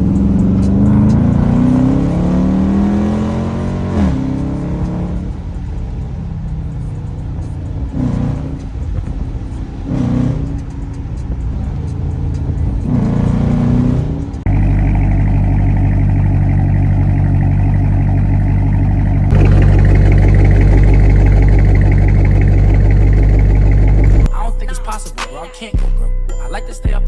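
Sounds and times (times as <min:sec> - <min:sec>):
music: 0:00.0 - 0:03.4, 0:24.3 - 0:27.0
car engine revving: 0:00.0 - 0:24.3.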